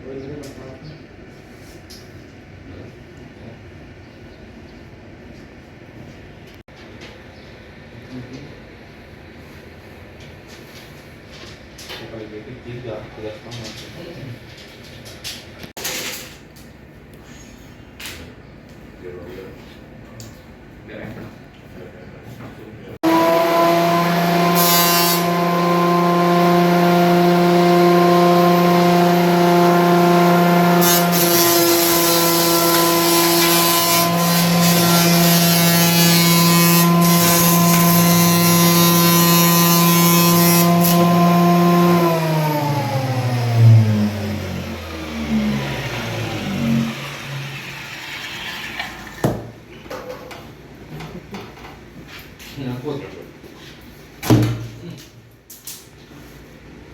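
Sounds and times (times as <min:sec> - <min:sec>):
thickness planer motor whine: 0:23.0 - 0:48.5
planer cutter noise on wood: 0:23.0 - 0:48.7
motor winding down: 0:23.0 - 0:49.2.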